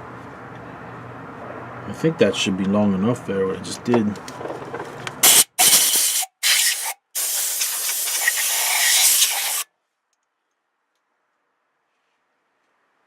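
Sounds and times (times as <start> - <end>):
hissing spray bursts: 5.2 - 9.7.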